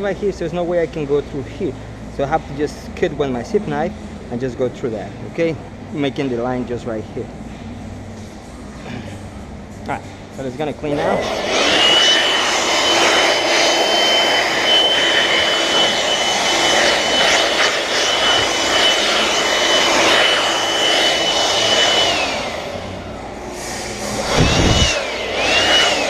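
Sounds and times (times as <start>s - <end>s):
shop vacuum whining: 7.5s - 26.0s.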